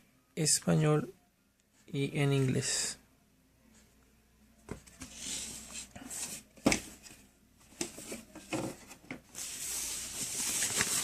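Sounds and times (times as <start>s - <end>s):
paper and packaging rustling: 4.8s - 11.0s.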